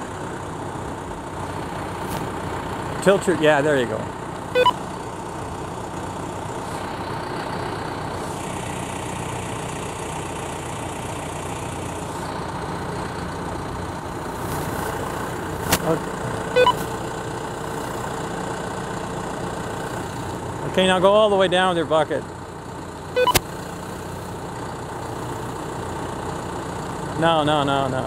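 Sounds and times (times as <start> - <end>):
tractor engine running: 0.0 - 28.0
short beep: 4.6 - 4.8, 16.5 - 16.9, 23.2 - 23.4.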